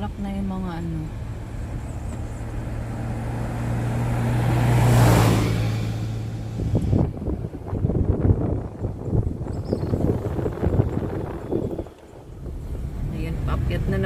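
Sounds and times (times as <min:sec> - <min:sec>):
car engine and road hum: 0:00.0 - 0:14.0
low thumps and rumble: 0:00.0 - 0:14.0
vehicle passing whoosh: 0:00.9 - 0:14.0.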